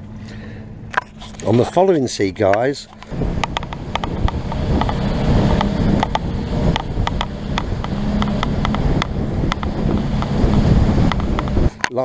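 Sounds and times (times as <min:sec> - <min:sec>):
motorboat engine running: 0:00.0 - 0:12.0
wind noise: 0:02.8 - 0:11.8
sharp ticks and taps: 0:03.0 - 0:11.6
rushing water: 0:03.1 - 0:11.7.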